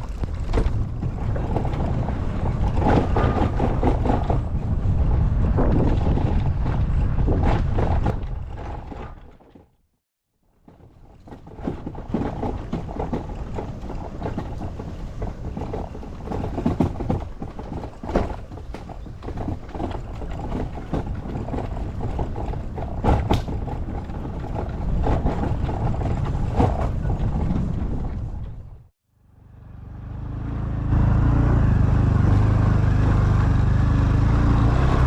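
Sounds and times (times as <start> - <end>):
motorcycle engine running: 29.2 - 35.0.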